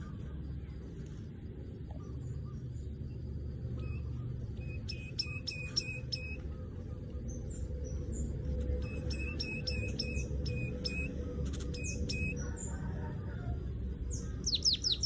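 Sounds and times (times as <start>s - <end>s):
steady low hum: 0.0s - 15.0s
bird chattering call: 14.2s - 15.0s.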